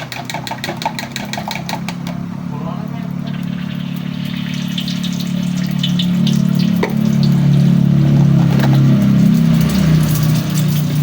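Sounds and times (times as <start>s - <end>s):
low mechanical hum: 0.0s - 11.0s
light clinks and scrapes: 8.1s - 11.0s.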